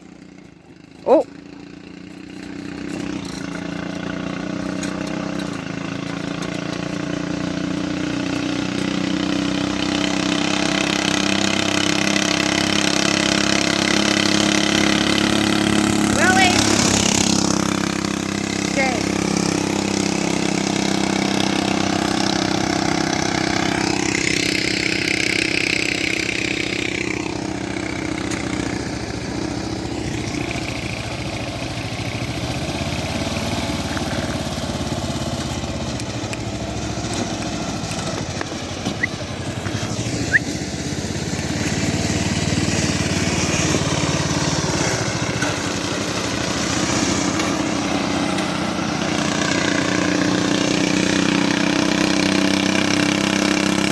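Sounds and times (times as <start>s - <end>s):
small engine running: 0.0s - 53.9s.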